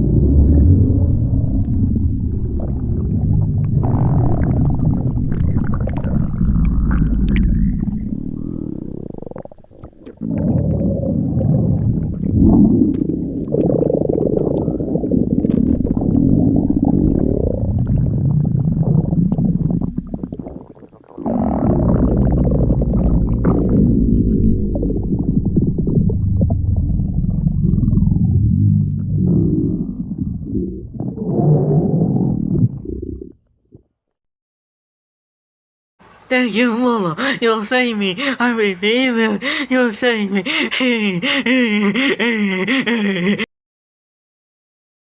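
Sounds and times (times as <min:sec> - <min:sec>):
stomach growling: 0:00.0 - 0:33.9.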